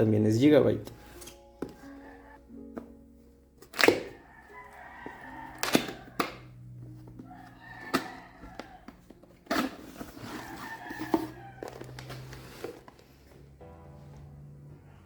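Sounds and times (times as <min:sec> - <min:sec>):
packaging rustling: 0:06.9 - 0:13.6.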